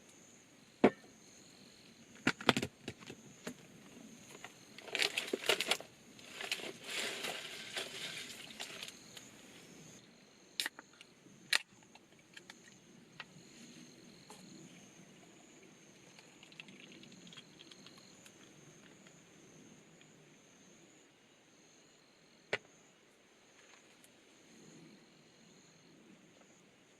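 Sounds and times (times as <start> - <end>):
insect trill: 0.0 - 26.7
rustling handling noises: 4.4 - 9.3.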